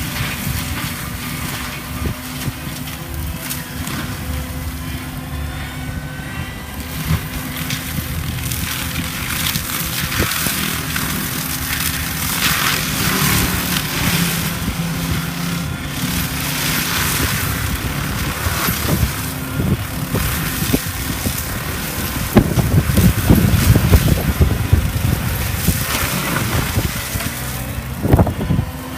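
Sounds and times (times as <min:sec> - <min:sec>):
mulcher shredding brush: 0:00.0 - 0:28.9
skid steer engine running: 0:00.0 - 0:28.9.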